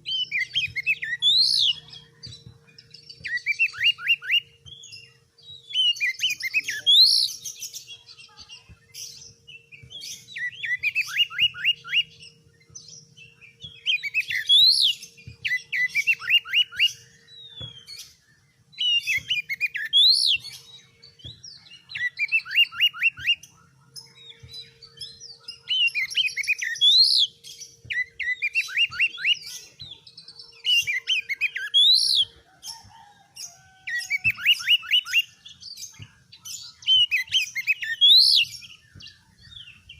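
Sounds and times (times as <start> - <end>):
bird singing: 0.0 - 39.9.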